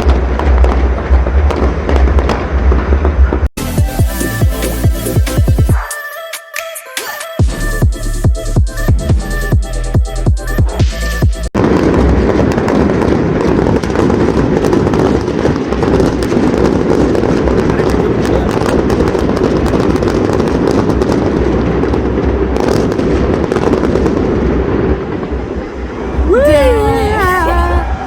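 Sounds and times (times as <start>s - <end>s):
fireworks crackling and banging: 0.0s - 3.5s, 11.6s - 28.0s
person singing: 26.3s - 28.0s.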